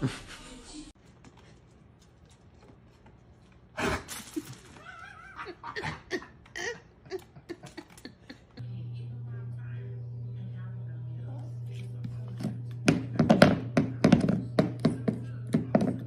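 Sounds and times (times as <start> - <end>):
person laughing: 4.2 - 8.7.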